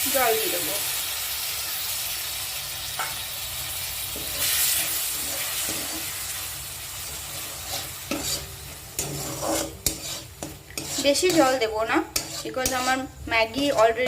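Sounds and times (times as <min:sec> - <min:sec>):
vegetables sizzling in a pan: 0:00.0 - 0:14.0
spoon stirring and scraping pan: 0:04.1 - 0:14.0.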